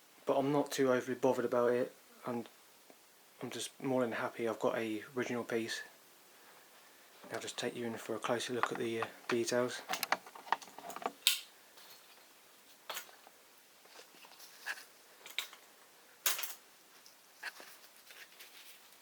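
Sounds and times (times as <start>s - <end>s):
light handling clicks and knocks: 8.5s - 11.4s.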